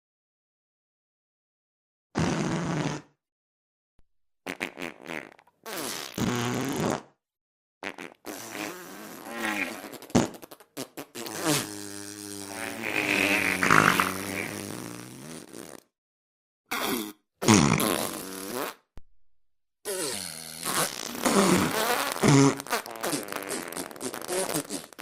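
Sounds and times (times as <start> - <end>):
buzzy farts: 2.2 - 3.2, 4.4 - 7.2, 7.8 - 15.9, 16.7 - 18.9, 19.8 - 25.0.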